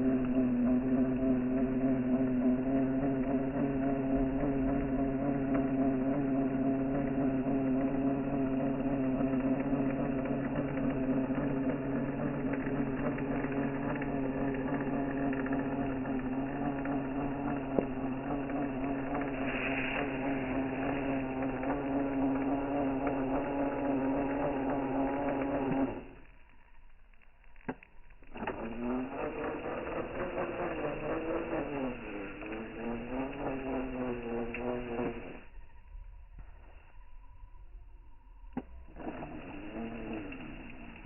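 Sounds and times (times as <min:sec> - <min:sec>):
engine idling steadily: 0:00.0 - 0:26.2, 0:28.3 - 0:36.4.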